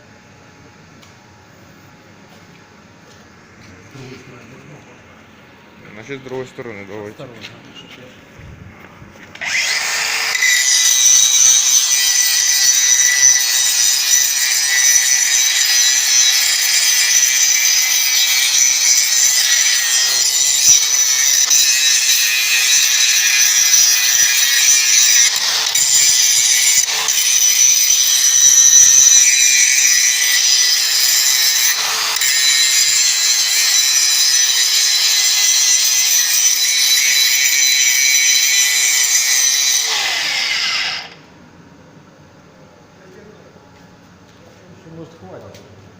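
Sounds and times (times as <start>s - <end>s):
angle grinder grinding metal: 9.3s - 41.2s.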